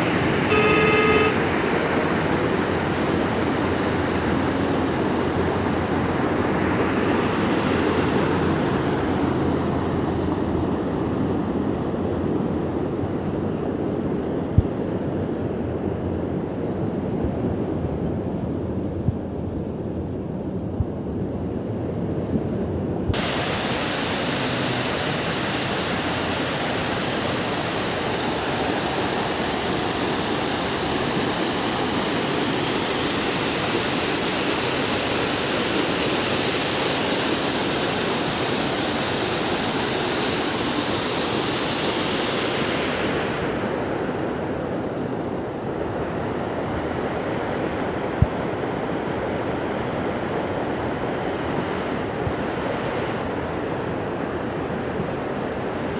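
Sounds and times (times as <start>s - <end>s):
river water rushing: 0.0s - 10.8s, 23.2s - 44.6s.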